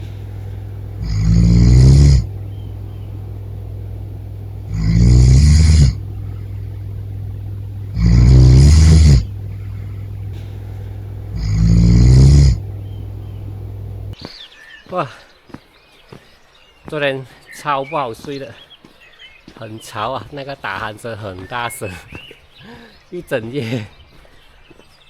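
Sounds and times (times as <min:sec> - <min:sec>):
person snoring loudly: 0:00.0 - 0:14.2
steady low hum: 0:00.0 - 0:14.2.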